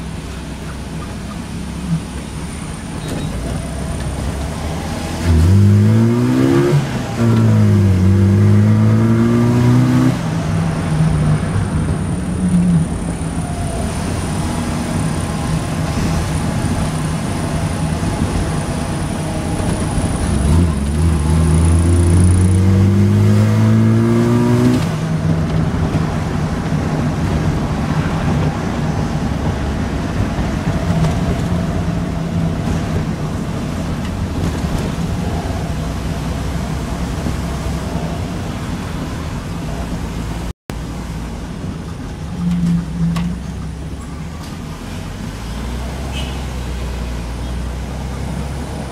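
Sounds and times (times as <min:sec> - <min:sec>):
car engine revving: 0:01.5 - 0:40.5.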